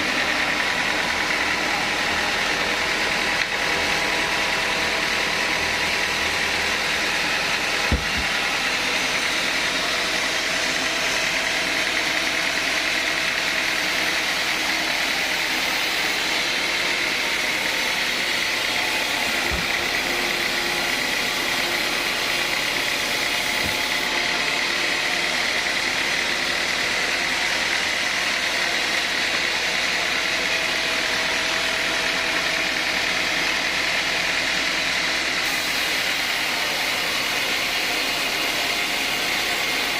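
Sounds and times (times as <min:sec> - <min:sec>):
sawmill saw cutting timber: 0:00.0 - 0:39.9.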